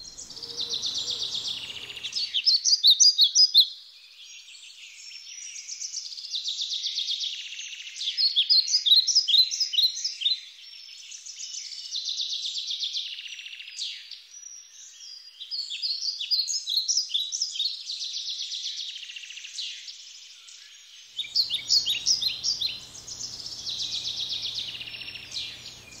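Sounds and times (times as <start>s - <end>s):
songbirds singing trills: 0.0s - 26.0s
low steady hum and hiss: 21.3s - 26.0s.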